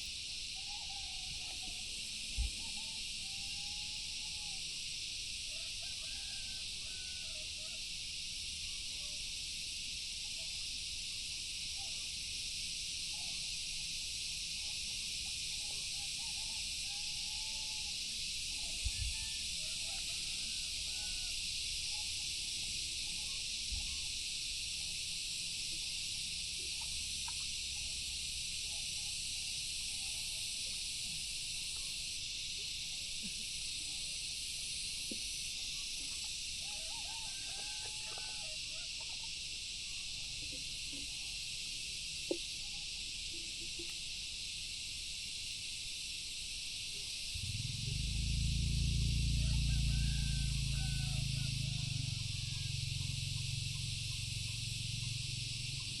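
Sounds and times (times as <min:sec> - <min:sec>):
faint wavering calls: 0:00.0 - 0:04.7, 0:47.4 - 0:56.0
high-pitched insect chorus: 0:00.0 - 0:56.0.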